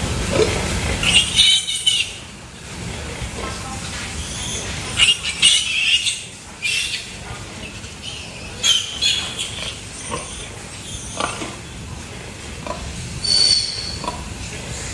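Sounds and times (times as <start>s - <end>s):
pigs squealing: 0.4s - 2.2s, 4.2s - 11.8s, 12.6s - 14.3s.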